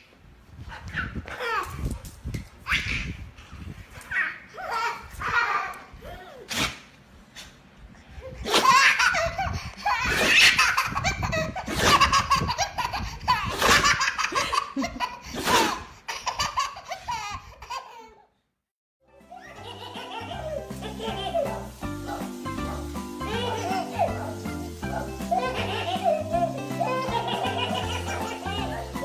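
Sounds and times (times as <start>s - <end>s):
baby laughing: 4.1s - 6.5s, 8.2s - 18.2s, 19.3s - 29.0s.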